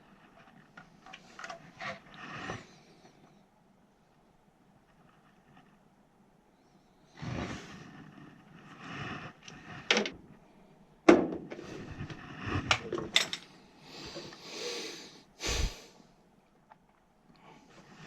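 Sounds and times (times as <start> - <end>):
rustling and scraping: 0.0 - 3.4, 4.8 - 5.9, 7.1 - 10.6, 11.4 - 14.4
tools clicking and knocking: 12.7 - 13.5.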